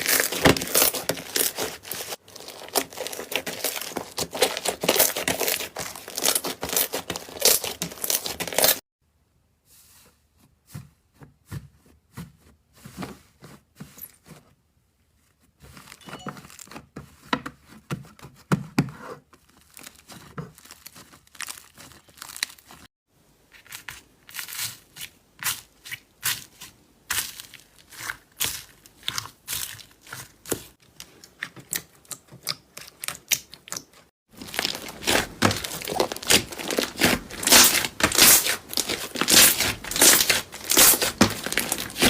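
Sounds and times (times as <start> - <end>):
slime crackling and popping: 0.0 - 8.8, 31.7 - 42.0.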